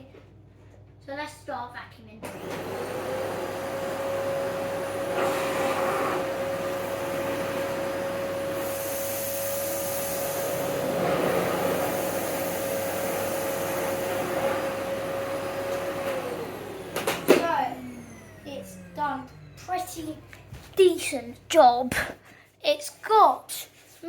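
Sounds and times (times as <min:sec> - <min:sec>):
vacuum cleaner motor whine: 0:02.2 - 0:20.8.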